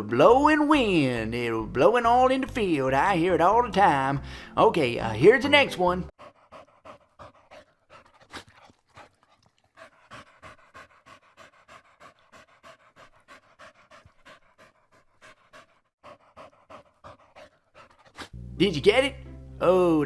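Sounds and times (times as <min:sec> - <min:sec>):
dog panting: 0:04.2 - 0:18.4.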